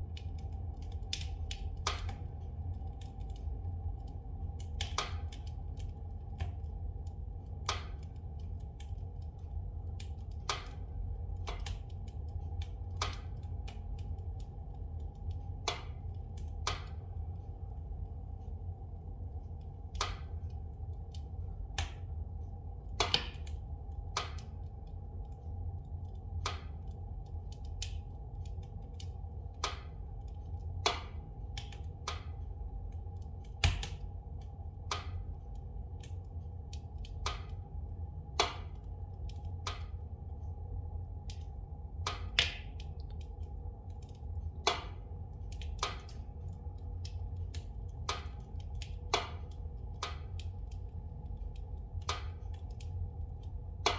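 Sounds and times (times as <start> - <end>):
fire crackling and popping: 0.0 - 53.9
low fire rumble: 0.0 - 53.9.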